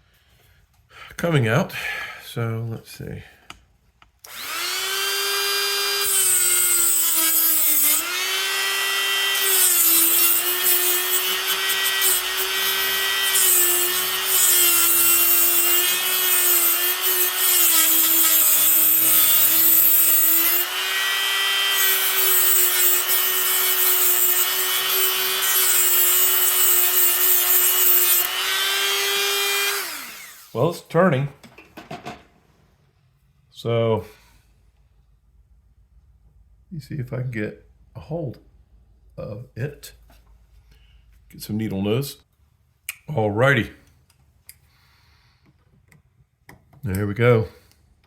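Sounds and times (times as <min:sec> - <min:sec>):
rotary tool whining: 0:04.2 - 0:30.7
cutting wheel grinding metal: 0:04.3 - 0:30.8.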